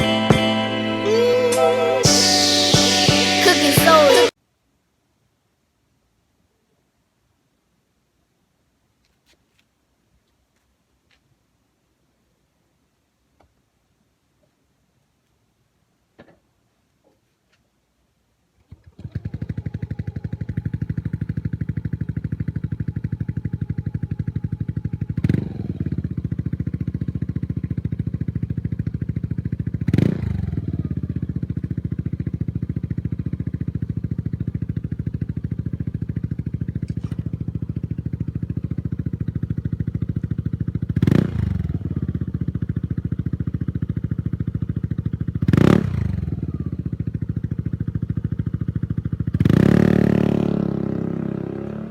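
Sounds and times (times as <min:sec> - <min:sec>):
scooter engine starting and idling: 0:18.6 - 0:51.9
scooter throttle blips: 0:18.7 - 0:43.0.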